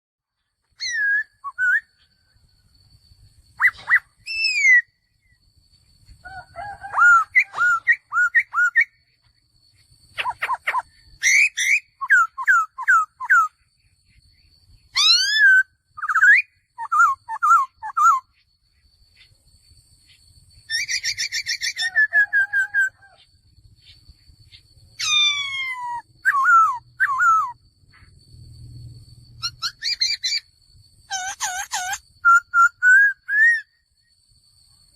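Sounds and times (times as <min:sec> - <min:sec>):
bird singing whistled phrases: 0:00.8 - 0:02.2, 0:03.5 - 0:05.4, 0:06.7 - 0:09.2, 0:10.2 - 0:13.7, 0:14.8 - 0:18.4, 0:20.7 - 0:23.3, 0:25.0 - 0:27.6, 0:29.4 - 0:30.5, 0:31.1 - 0:33.8.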